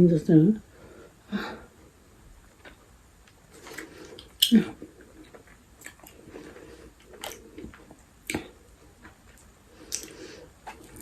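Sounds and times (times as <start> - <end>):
chewing and biting: 3.5 - 11.0
wet mouth clicks: 4.2 - 4.8, 9.4 - 11.0.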